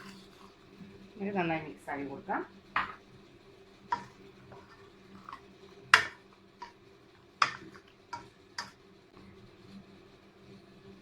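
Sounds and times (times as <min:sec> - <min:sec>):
spoon clinking against pot: 0:07.4 - 0:08.8.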